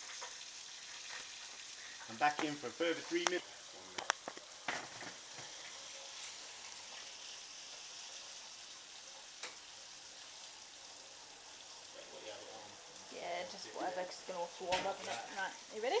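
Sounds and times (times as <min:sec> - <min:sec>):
food sizzling in hot fat: 0:00.0 - 0:16.0.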